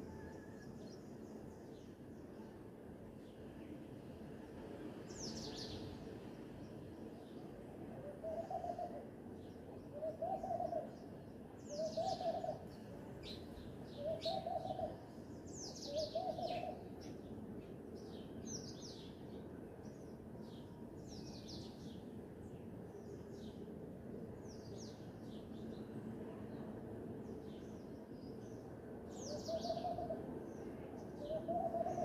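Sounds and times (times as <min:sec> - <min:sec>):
outdoor ambience hiss: 0:00.0 - 0:32.0
bird hooting calls: 0:08.1 - 0:09.0, 0:09.9 - 0:11.0, 0:11.7 - 0:12.6, 0:14.0 - 0:15.0, 0:15.9 - 0:16.8, 0:29.3 - 0:30.3, 0:31.2 - 0:32.0.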